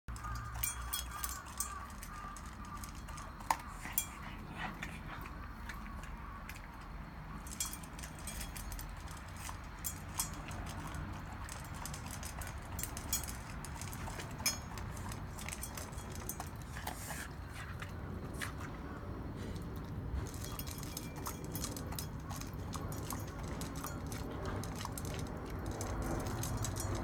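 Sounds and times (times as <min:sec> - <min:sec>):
dog crunching food: 0:00.1 - 0:18.9, 0:19.6 - 0:27.0.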